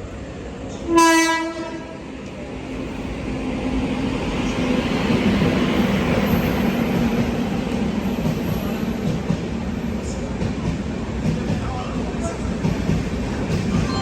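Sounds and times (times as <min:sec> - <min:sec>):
train rumbling into platform: 0:00.0 - 0:14.0
locomotive horn blast: 0:00.9 - 0:02.0.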